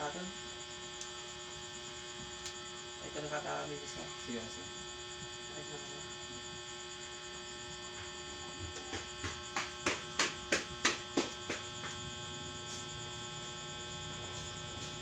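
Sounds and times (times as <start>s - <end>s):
electrical mains hum: 0.0s - 15.0s
sharp taps: 8.8s - 12.0s.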